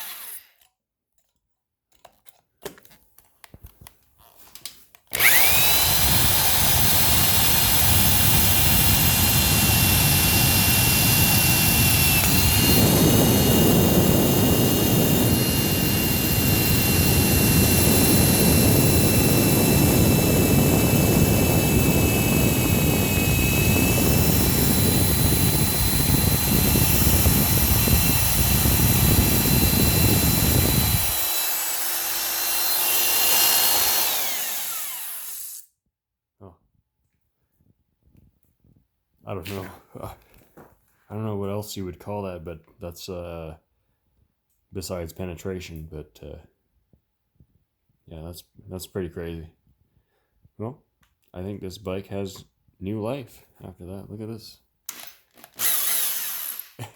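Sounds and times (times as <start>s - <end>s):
drill bit grinding metal: 0.0s - 0.7s, 5.1s - 35.7s, 54.9s - 56.9s
electric drill whining: 0.0s - 0.7s, 5.1s - 35.7s, 54.9s - 56.9s.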